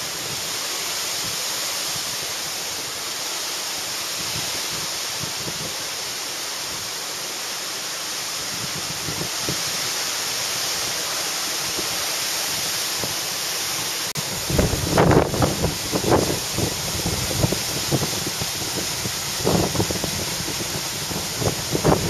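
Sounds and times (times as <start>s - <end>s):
hurricane wind and water hiss: 0.0s - 22.0s
wind gusts buffeting microphone: 8.4s - 9.9s, 14.2s - 22.0s.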